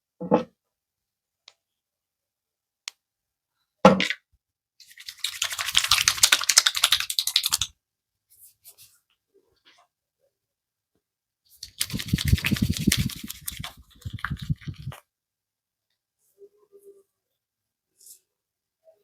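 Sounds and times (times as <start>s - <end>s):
rapid crackling clicks of hair: 4.8s - 7.7s, 11.6s - 15.0s.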